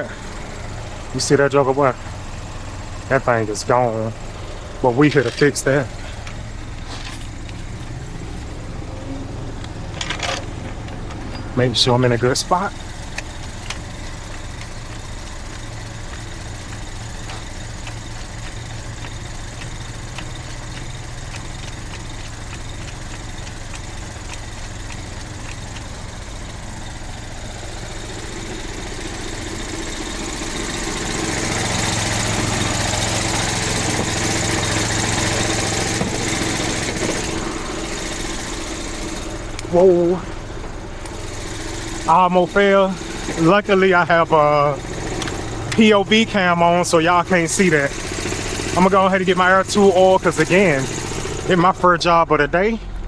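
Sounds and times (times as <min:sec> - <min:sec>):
engine idling: 0:00.0 - 0:53.0.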